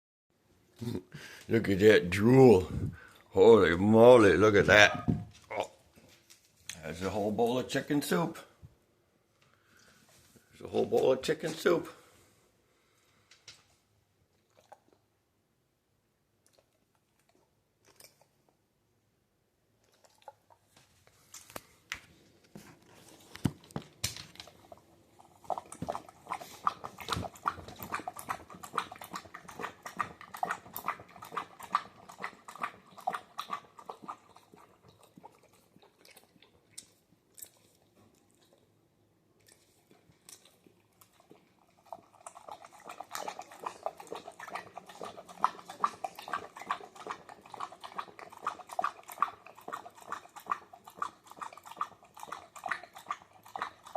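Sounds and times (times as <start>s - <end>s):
dog lapping from a bowl: 1.6s - 5.4s, 9.7s - 12.1s, 14.4s - 15.1s, 19.8s - 20.8s, 22.6s - 38.8s, 39.4s - 53.9s.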